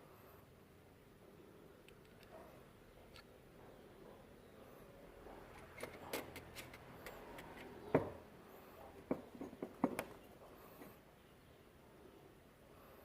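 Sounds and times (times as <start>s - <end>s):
metal parts and tools clicking: 1.9s - 2.3s, 5.5s - 7.8s.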